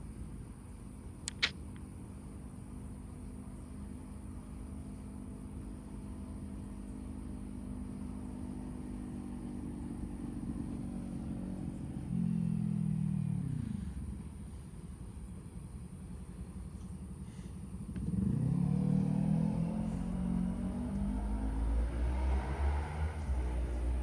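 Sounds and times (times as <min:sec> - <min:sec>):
car passing by: 0:18.0 - 0:24.0.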